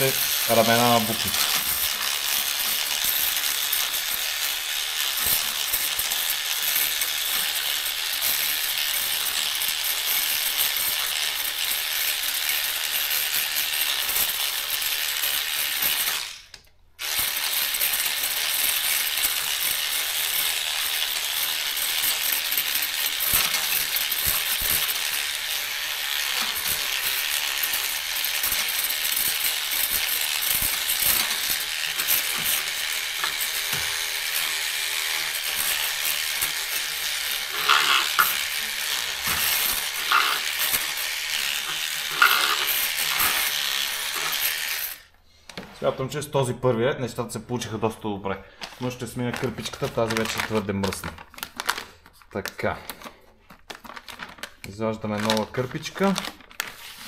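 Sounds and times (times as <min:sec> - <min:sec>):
electric cleaning brush scrubbing: 0:00.0 - 0:16.4, 0:17.0 - 0:45.1
typewriter keys clattering: 0:21.6 - 0:25.1, 0:37.5 - 0:41.0, 0:49.2 - 0:51.8, 0:52.4 - 0:57.0.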